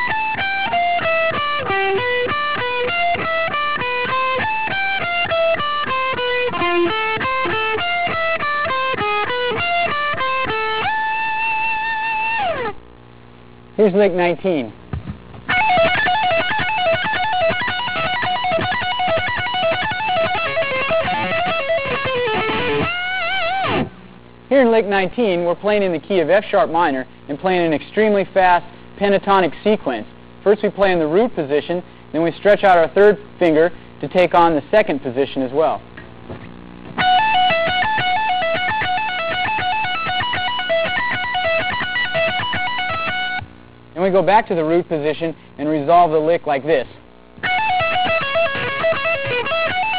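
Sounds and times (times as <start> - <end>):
fast electric guitar run: 0.0 - 12.8, 14.9 - 24.1, 36.3 - 43.5, 47.4 - 49.9.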